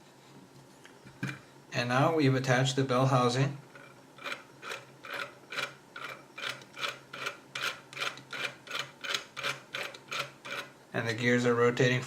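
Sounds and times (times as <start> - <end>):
plastic gears clicking: 3.8 - 10.7.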